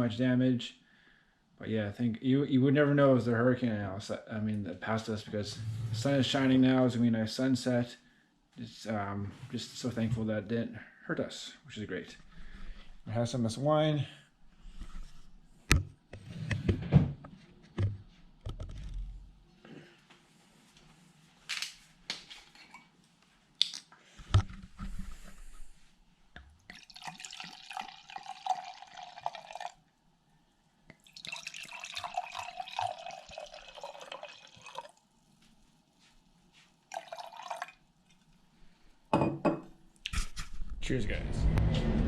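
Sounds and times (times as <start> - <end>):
wine pouring into glass: 26.7 - 29.8, 31.0 - 35.0, 36.9 - 37.8.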